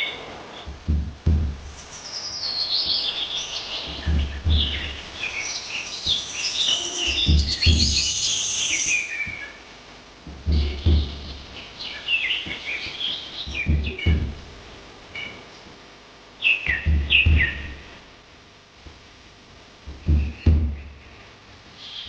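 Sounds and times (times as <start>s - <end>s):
birds chirping: 0.0s - 9.7s, 10.3s - 14.5s, 16.4s - 18.0s, 19.9s - 21.0s
low thuds: 0.7s - 5.4s, 7.1s - 8.2s, 10.2s - 11.8s, 12.4s - 14.9s, 16.7s - 18.0s, 19.8s - 21.1s.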